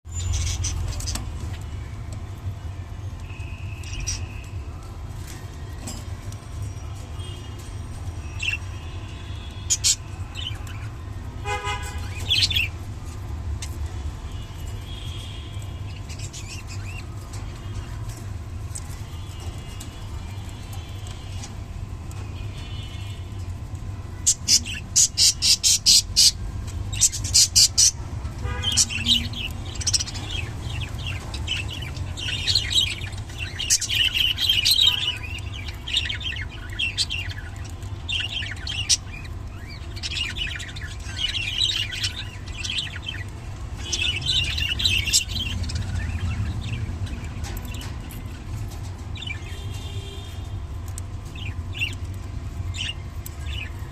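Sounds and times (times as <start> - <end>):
budgerigar chirping and chattering: 24.3 - 26.4.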